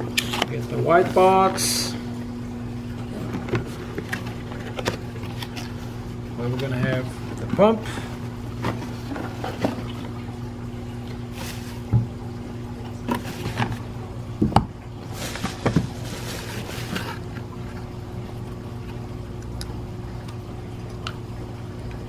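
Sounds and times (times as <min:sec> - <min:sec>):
steady low hum: 0:00.0 - 0:22.0
packaging rustling: 0:03.0 - 0:07.1, 0:15.1 - 0:17.4.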